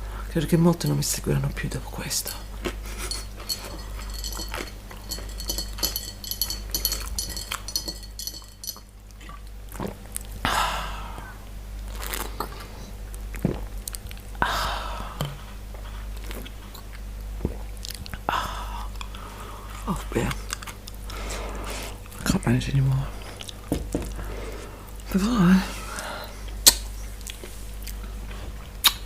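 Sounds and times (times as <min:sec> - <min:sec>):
low electrical hum: 0:00.0 - 0:29.0
wet mouth clicks: 0:26.6 - 0:28.0.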